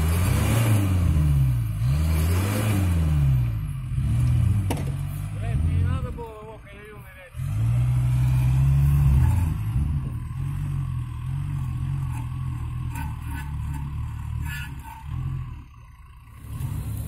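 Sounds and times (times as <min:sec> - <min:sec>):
off-road vehicle engine revving: 0:00.0 - 0:17.0.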